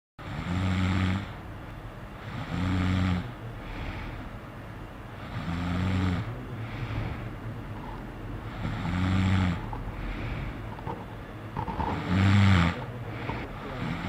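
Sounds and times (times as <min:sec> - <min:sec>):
person snoring: 0:00.2 - 0:01.4, 0:02.2 - 0:04.2, 0:05.2 - 0:07.3, 0:08.4 - 0:10.6, 0:11.6 - 0:14.0.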